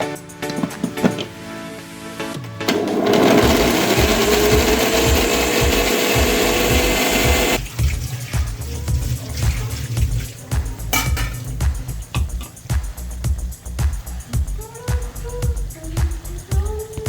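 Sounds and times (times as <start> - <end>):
electric mixer grinder running: 2.6 - 7.6.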